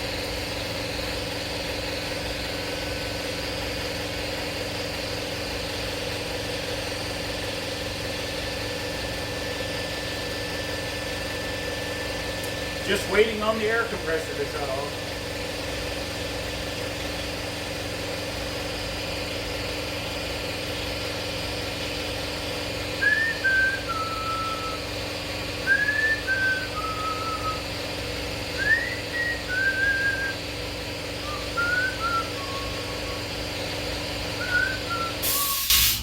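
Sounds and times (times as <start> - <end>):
air compressor motor hum: 0.0 - 36.0
person whistling a tune: 23.0 - 24.9, 25.6 - 27.6, 28.6 - 30.4, 31.2 - 33.3, 34.4 - 35.7.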